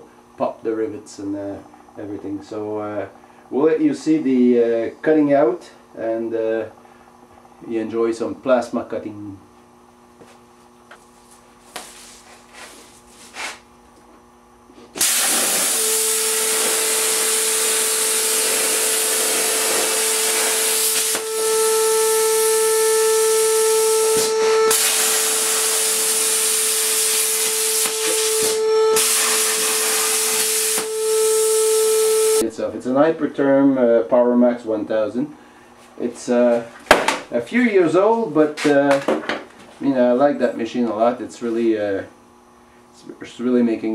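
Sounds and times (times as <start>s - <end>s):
plasma cutter hissing: 15.0s - 32.4s.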